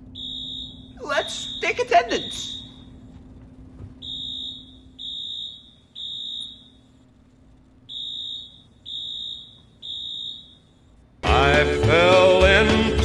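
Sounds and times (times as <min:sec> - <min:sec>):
fire alarm beeping: 0:00.1 - 0:03.0, 0:04.0 - 0:07.0, 0:07.9 - 0:11.0.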